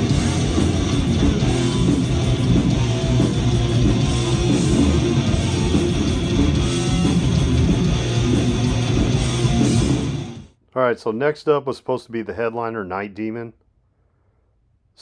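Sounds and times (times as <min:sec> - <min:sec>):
heavy metal band playing: 0:00.0 - 0:10.5.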